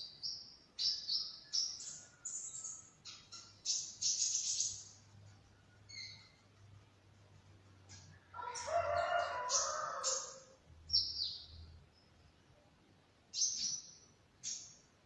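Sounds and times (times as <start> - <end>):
small birds chirping: 0.0 - 15.0
rooster crowing: 8.3 - 10.6.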